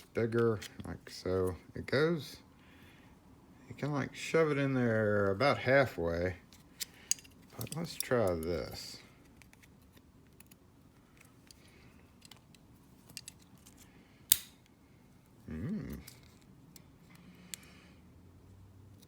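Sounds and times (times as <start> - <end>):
short vocal sound: 15.4 - 16.2.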